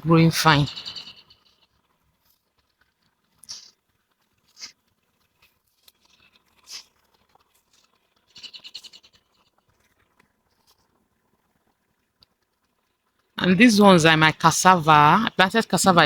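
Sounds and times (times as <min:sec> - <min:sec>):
bird chirping: 0:00.0 - 0:01.4, 0:08.4 - 0:09.1
bird trill: 0:00.2 - 0:01.4, 0:08.4 - 0:09.1.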